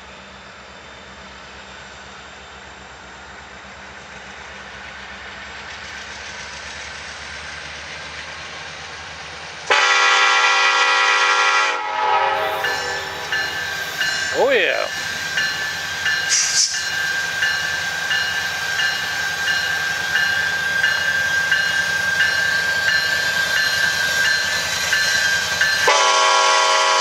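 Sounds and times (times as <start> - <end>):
train rushing noise: 0.0 - 27.0
locomotive air horn: 9.7 - 13.3, 25.9 - 27.0.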